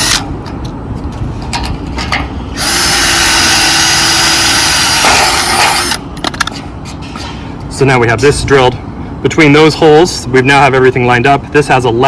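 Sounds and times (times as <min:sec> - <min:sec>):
power drill drilling: 0:02.6 - 0:06.0.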